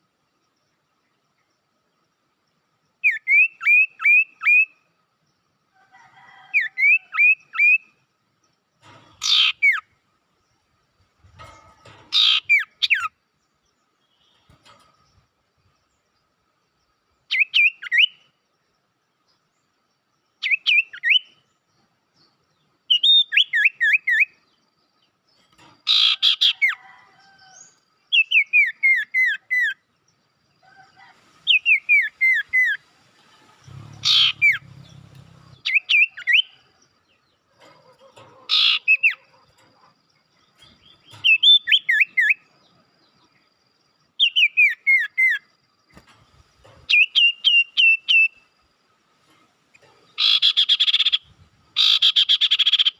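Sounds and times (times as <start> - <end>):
bird chirping: 3.0 - 5.5, 6.6 - 52.9.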